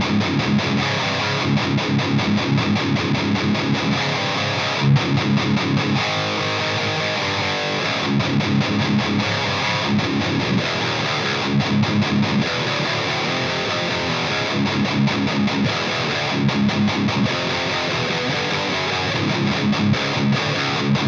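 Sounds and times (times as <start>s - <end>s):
distorted electric guitar riff: 0.0s - 21.0s.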